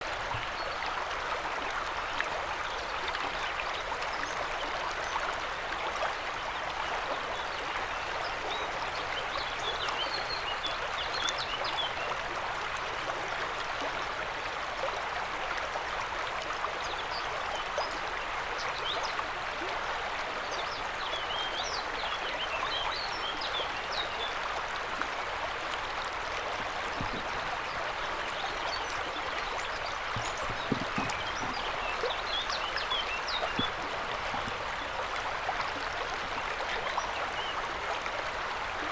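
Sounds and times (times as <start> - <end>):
river water rushing: 24.7 - 38.9.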